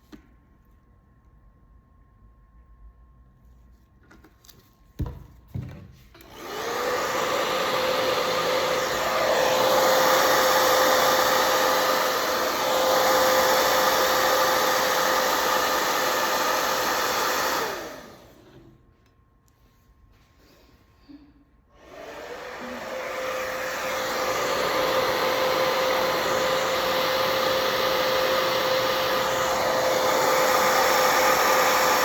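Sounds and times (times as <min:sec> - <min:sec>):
hair dryer blowing: 0:06.2 - 0:18.7, 0:21.7 - 0:32.0.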